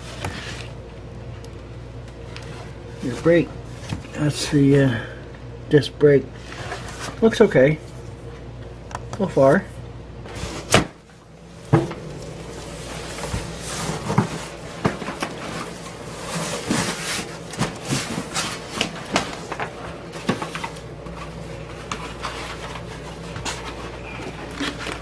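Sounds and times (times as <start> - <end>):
packing materials rustling: 11.4 - 25.0.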